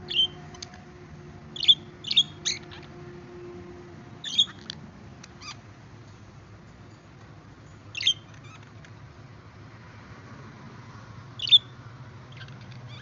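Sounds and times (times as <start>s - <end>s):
budgerigars chirping: 0.1s - 0.4s, 1.6s - 2.9s, 4.2s - 4.8s, 7.9s - 8.7s, 11.4s - 11.7s, 12.3s - 13.0s.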